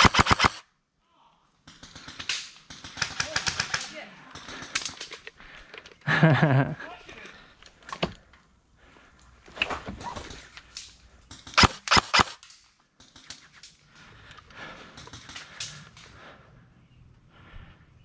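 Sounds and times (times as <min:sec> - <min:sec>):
airsoft gun shots: 0:00.0 - 0:00.6, 0:11.6 - 0:12.4.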